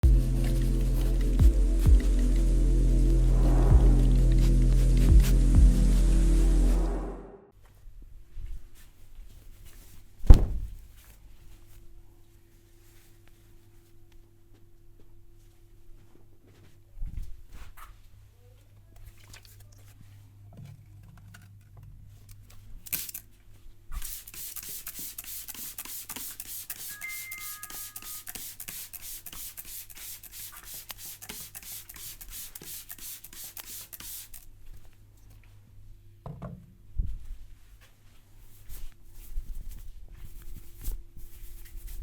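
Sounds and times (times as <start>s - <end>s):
hands rubbing hair and scalp: 0.0s - 6.8s, 24.1s - 34.4s
soft scattered touches: 37.1s - 42.0s.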